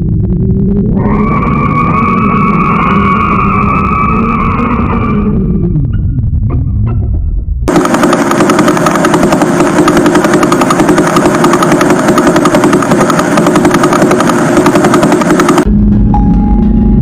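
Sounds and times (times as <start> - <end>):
rapid pulsing buzz: 7.7 - 15.7.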